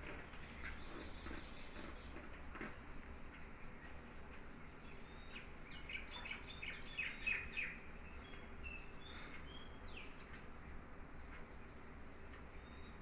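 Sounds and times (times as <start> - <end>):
birds chirping: 0.0 - 13.0
faint low hum: 0.0 - 13.0.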